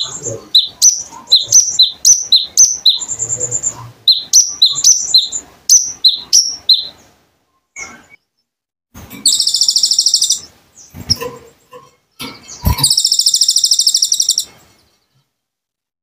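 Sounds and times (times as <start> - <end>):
songbird high-pitched trills: 0.0 - 7.0, 9.2 - 10.5, 12.5 - 15.1
bird short chirps: 9.3 - 11.2, 12.5 - 14.6.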